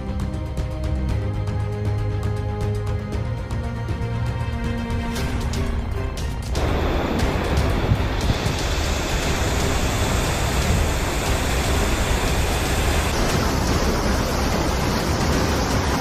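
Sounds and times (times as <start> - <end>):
deep rumble: 6.5 - 16.0
heavy rain: 6.5 - 16.0
strong wind: 6.6 - 16.0.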